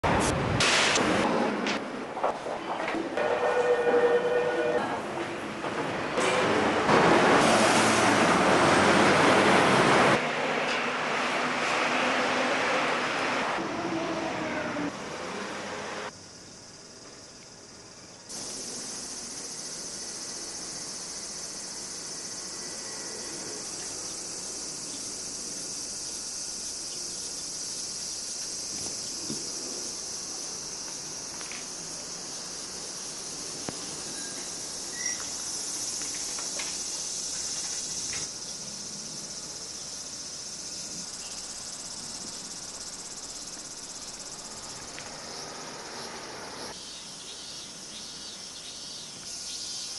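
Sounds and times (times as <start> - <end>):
cicadas chorus: 11.1 - 49.9.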